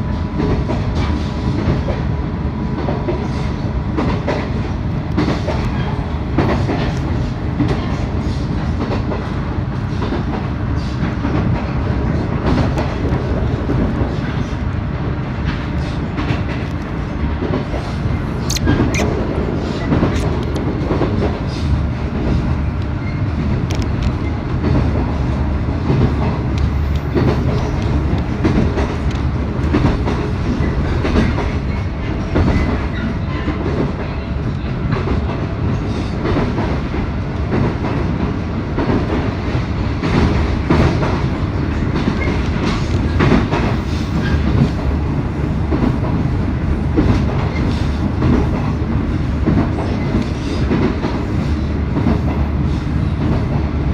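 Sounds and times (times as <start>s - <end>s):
train running at speed: 0.0s - 53.9s.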